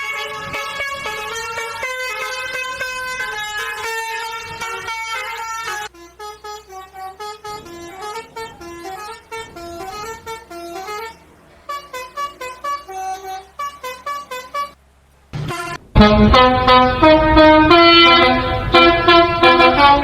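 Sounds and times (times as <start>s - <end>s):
bus musical horn: 0.0s - 20.0s.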